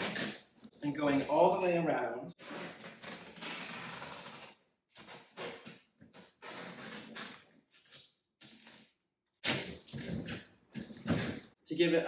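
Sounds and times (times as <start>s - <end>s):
packing tape pulled off roll: 0.0s - 1.3s, 2.4s - 11.4s.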